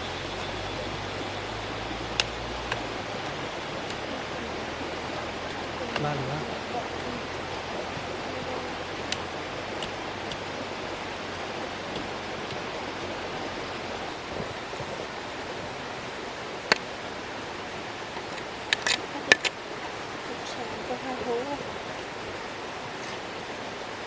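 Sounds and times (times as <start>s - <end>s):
steady rushing noise: 0.0s - 24.0s
sharp clicks: 0.3s - 14.2s, 18.0s - 20.0s.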